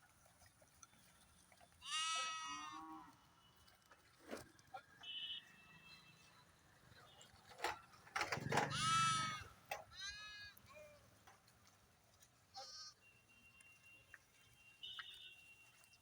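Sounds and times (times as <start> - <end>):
sheep bleating: 1.8 - 3.1, 8.6 - 10.6, 12.6 - 13.0.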